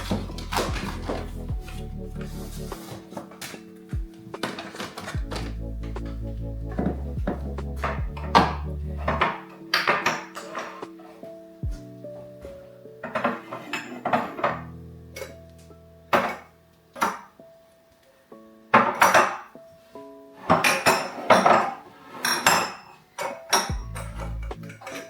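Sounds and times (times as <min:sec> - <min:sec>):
soft background music: 0:00.0 - 0:25.0
glass jars clinking: 0:20.5 - 0:25.0.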